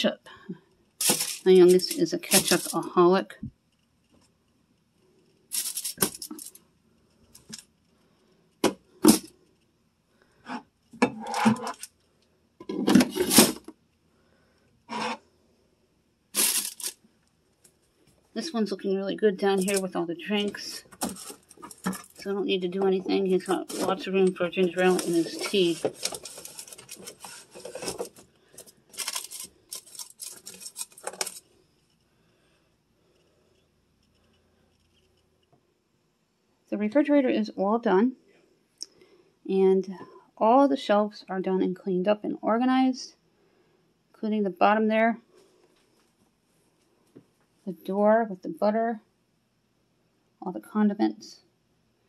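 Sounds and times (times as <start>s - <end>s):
bottles and jars clinking: 1.0s - 2.8s.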